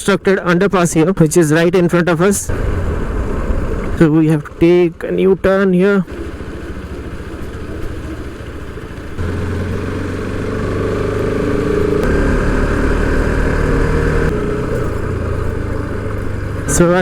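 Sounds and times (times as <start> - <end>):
motorcycle engine running: 6.1 - 17.0.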